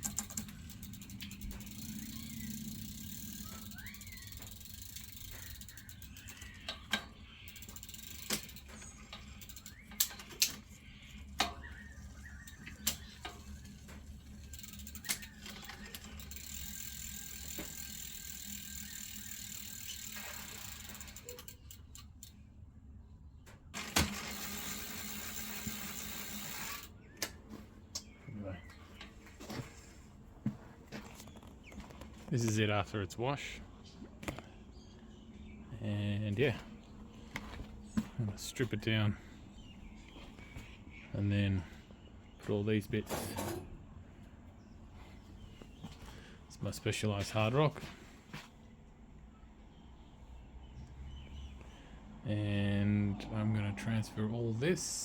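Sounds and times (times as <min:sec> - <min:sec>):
clicks and knocks on bicycle: 0:00.0 - 0:22.3
steady low hum: 0:00.0 - 0:55.0.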